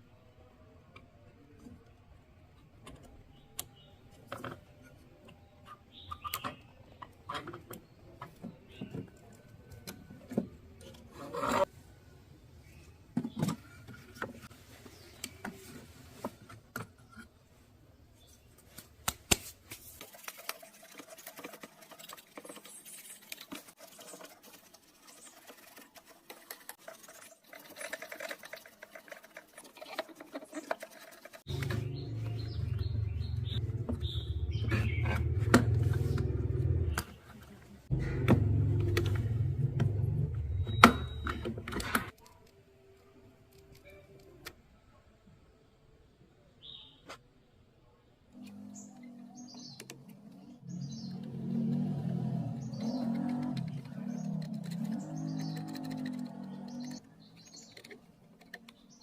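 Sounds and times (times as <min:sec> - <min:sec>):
scratching and rubbing: 0:19.3 - 0:33.8, 0:49.6 - 0:59.0.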